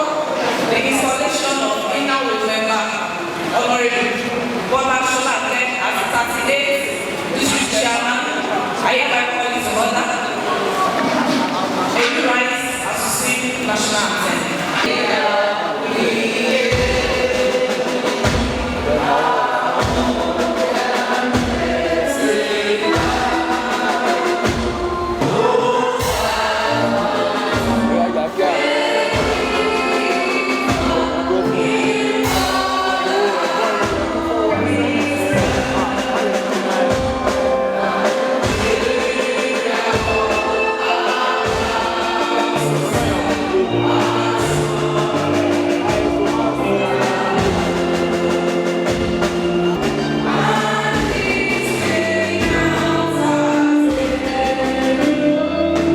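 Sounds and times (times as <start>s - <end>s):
crowd singing an anthem: 0.0s - 55.9s
steady low beat: 16.8s - 53.4s.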